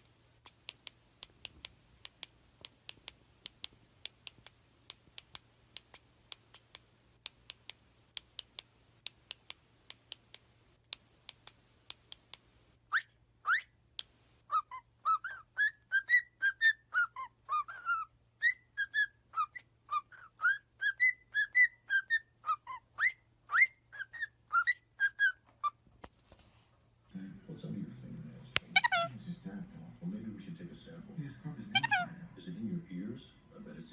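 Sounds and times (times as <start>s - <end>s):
sharp irregular clicks: 0.0s - 12.6s
parrot whistling chirpy notes: 12.9s - 13.7s, 14.5s - 25.8s.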